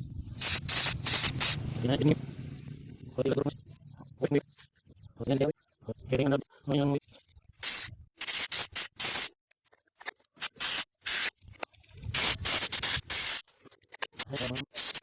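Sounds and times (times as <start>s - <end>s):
aerosol spray hissing bursts: 0.4s - 1.6s, 7.6s - 9.3s, 10.4s - 11.3s, 12.1s - 13.4s, 14.2s - 15.0s.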